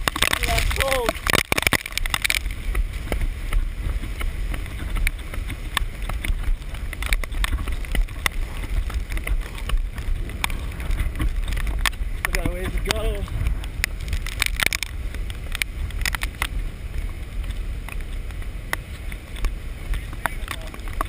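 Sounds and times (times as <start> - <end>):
muffled wind rumble: 0.0 - 21.0
rain taps on camera case: 0.0 - 21.0.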